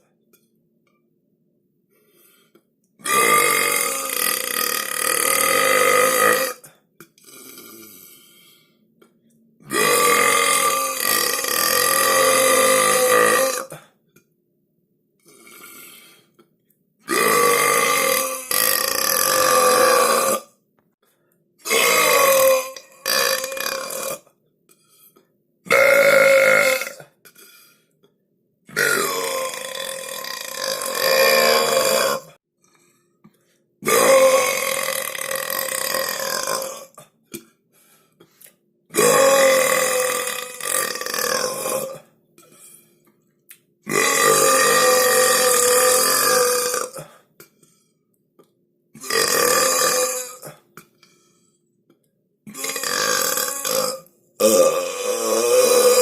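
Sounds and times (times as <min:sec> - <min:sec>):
person belching loudly: 0:03.0 - 0:08.0, 0:09.6 - 0:13.8, 0:17.0 - 0:20.5, 0:21.6 - 0:24.3, 0:25.7 - 0:27.2, 0:28.7 - 0:32.4, 0:33.8 - 0:37.0, 0:38.9 - 0:42.1, 0:43.9 - 0:47.2, 0:49.0 - 0:50.9, 0:52.5 - 0:56.0.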